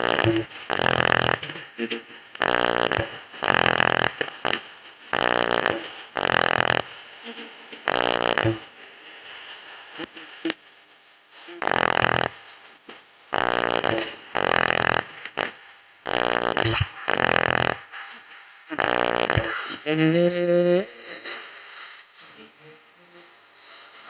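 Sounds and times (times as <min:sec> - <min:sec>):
distorted buzzing speaker rattle: 0:00.0 - 0:08.7, 0:11.6 - 0:12.6, 0:13.3 - 0:18.1, 0:18.7 - 0:20.2.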